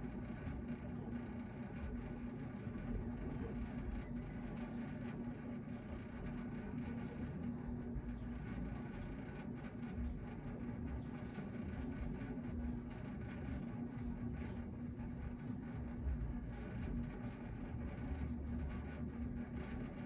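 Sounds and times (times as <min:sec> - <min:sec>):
steady mechanical hum: 0:00.0 - 0:20.0.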